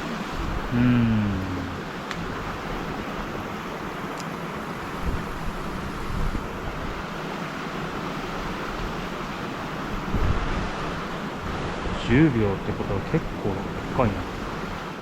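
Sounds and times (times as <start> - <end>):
stream water flowing: 0.0 - 15.0
wind buffeting microphone: 4.7 - 7.0, 9.8 - 12.7.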